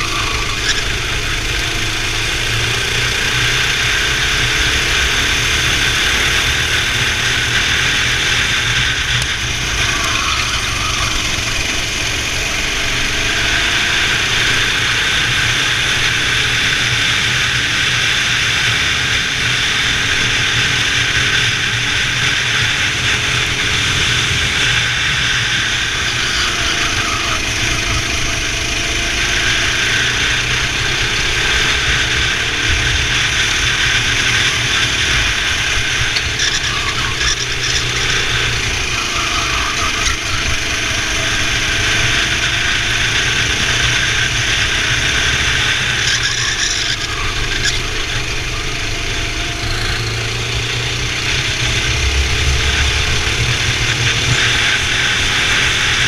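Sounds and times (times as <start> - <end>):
racing kart engine: 0.0 - 56.0.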